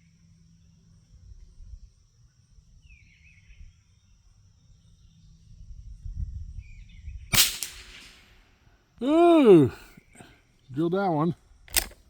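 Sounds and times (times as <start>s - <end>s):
insects droning: 0.0s - 12.0s
rifle shot: 7.3s - 8.4s.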